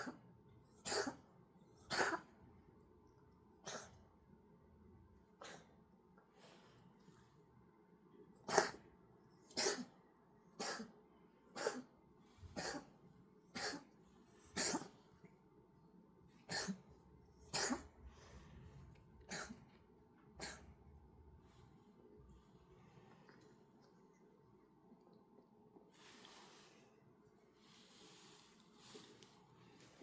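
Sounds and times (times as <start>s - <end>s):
cat coughing: 0.8s - 2.4s, 3.6s - 4.0s, 8.4s - 8.8s, 9.5s - 10.0s, 10.6s - 11.9s, 12.6s - 13.9s, 14.6s - 15.0s, 16.5s - 16.9s, 17.5s - 18.0s, 19.3s - 19.7s, 20.4s - 20.7s.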